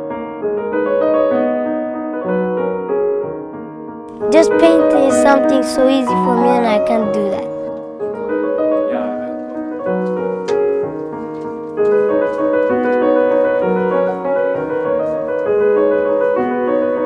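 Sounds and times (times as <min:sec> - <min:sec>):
slow piano music: 0:00.0 - 0:17.0.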